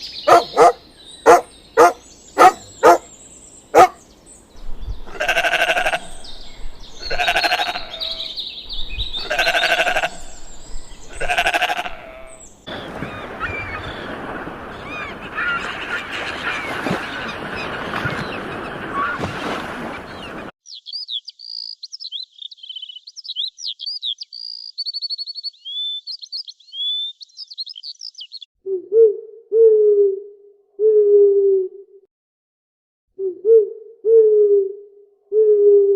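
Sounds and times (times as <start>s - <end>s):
bird chirping song: 0.0s - 19.1s, 19.9s - 29.2s
animal bleats: 5.1s - 6.2s, 7.0s - 8.3s, 9.2s - 10.4s, 11.1s - 12.5s
noisy animal chorus: 5.1s - 6.3s, 7.0s - 8.4s, 9.2s - 10.4s, 11.0s - 19.3s.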